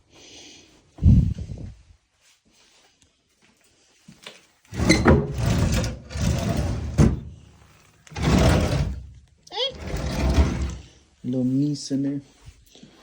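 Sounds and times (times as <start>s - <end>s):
furniture dragging and rattling: 4.7s - 11.0s.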